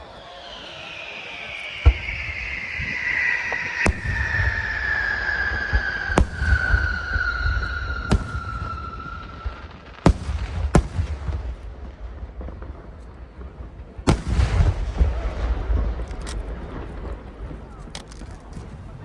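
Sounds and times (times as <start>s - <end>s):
firework whistle falling in pitch: 0.0s - 10.0s
low rumble of booms: 1.8s - 19.0s
firework shells bursting: 1.9s - 11.8s.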